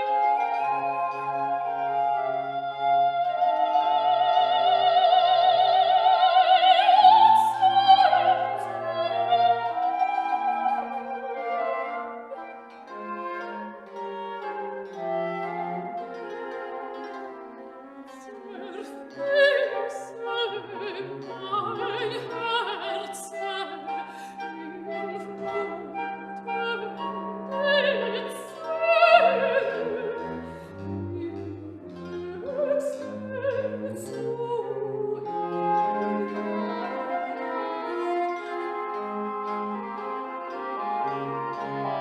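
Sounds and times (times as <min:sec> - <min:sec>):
orchestra with strings: 0:00.0 - 0:42.0
operatic singer with vibrato: 0:02.6 - 0:11.0, 0:26.5 - 0:38.6.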